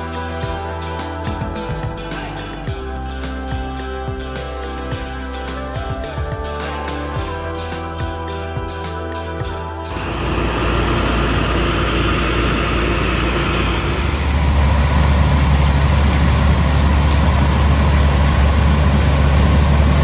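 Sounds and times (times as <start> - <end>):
music: 0.0 - 11.6
combine harvester droning: 9.9 - 20.0.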